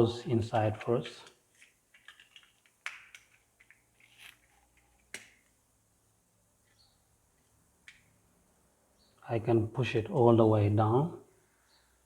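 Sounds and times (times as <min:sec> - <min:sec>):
small plastic parts clicking: 0:00.6 - 0:05.6.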